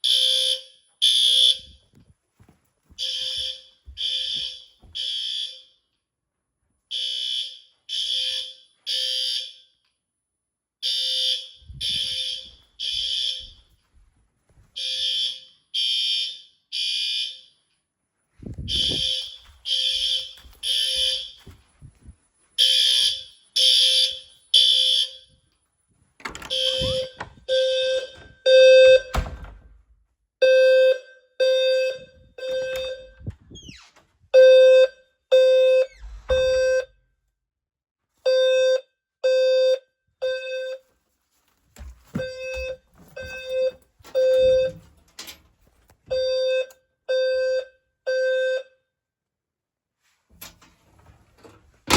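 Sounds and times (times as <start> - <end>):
fire alarm beeping: 0.0 - 1.9, 2.9 - 5.8, 6.9 - 9.8, 10.8 - 13.9, 14.8 - 17.8, 18.6 - 25.5, 26.2 - 29.6, 30.4 - 37.0, 38.2 - 40.9, 42.1 - 45.4, 46.1 - 48.8.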